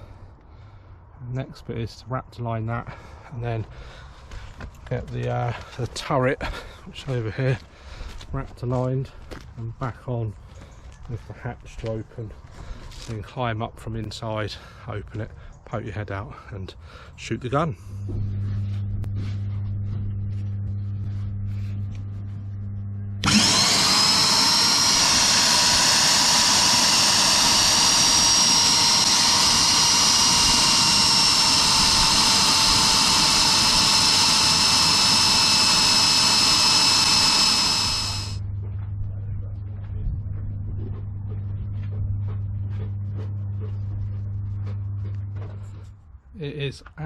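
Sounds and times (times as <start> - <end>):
steady low hum: 0.0 - 47.0
electric drill whining: 23.2 - 38.4.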